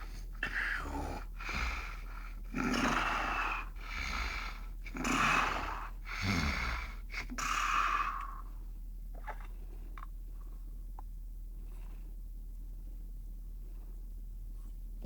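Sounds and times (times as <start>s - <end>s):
person snoring: 0.0s - 8.4s.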